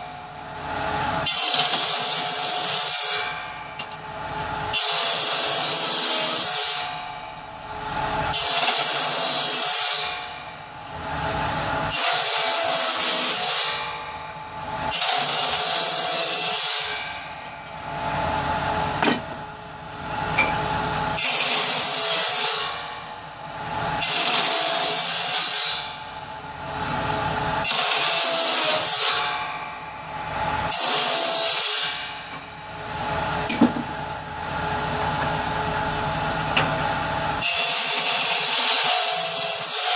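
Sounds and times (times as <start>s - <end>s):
power saw cutting wood: 0.0s - 39.9s.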